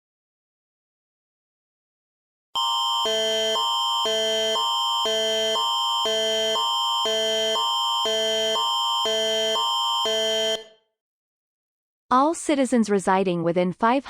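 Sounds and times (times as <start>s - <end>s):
emergency alert tone: 2.6s - 10.8s.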